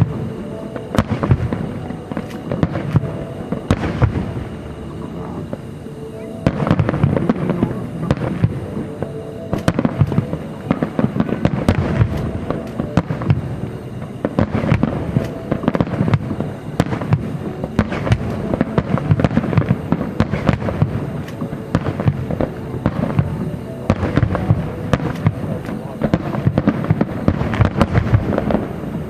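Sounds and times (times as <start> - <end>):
fireworks bangs and crackles: 0.0 - 29.0
music playing: 0.0 - 29.0.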